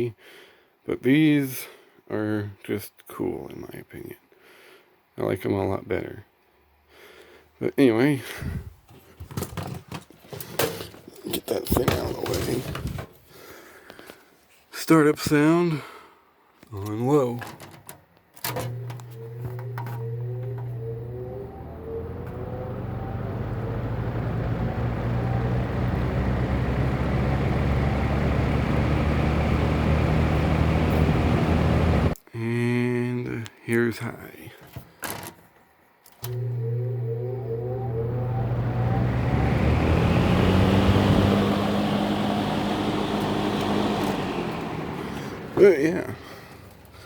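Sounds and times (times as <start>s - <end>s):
fan motor hum: 18.4s - 32.2s, 36.2s - 46.0s.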